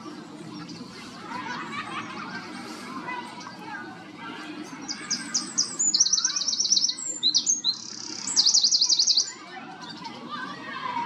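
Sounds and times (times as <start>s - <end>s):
songbird singing trills: 4.8s - 10.0s.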